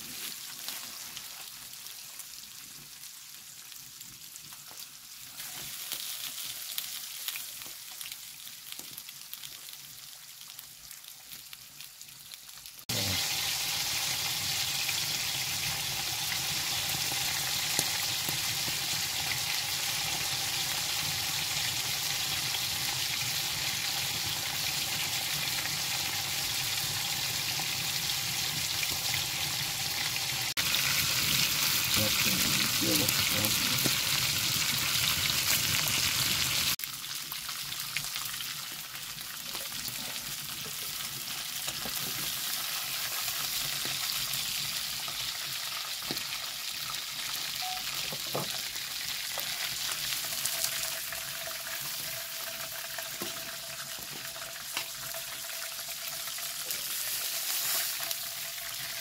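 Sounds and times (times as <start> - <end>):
food sizzling in a pan: 0.0 - 59.0.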